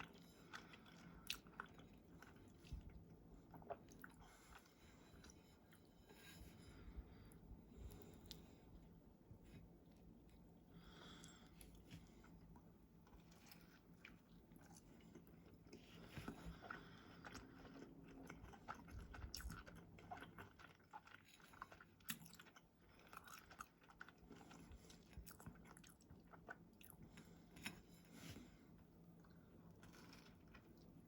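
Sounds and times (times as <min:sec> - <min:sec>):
person chewing: 0:00.0 - 0:05.8, 0:11.0 - 0:28.5.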